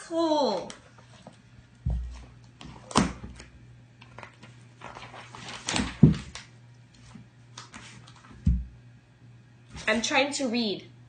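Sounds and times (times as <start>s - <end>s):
magazine paper rustling: 0.8s - 8.5s.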